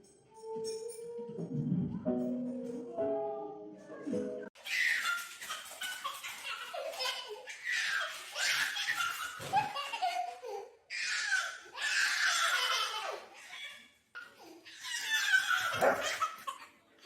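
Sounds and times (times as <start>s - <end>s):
baby laughing: 4.6s - 10.7s, 11.3s - 16.7s.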